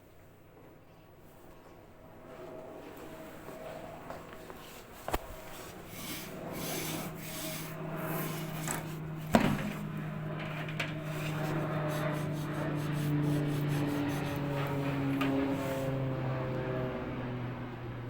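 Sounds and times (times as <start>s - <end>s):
clothes dryer rubbing and rasping: 4.4s - 16.1s
low hum: 5.2s - 17.5s.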